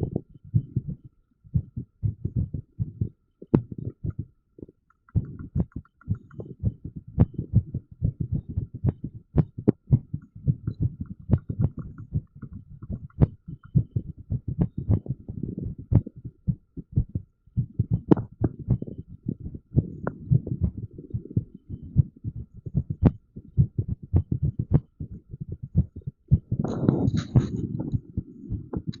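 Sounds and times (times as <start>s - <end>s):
irregular heartbeat thumps: 0.0s - 29.0s
scratchy rubbing noise: 26.6s - 29.0s.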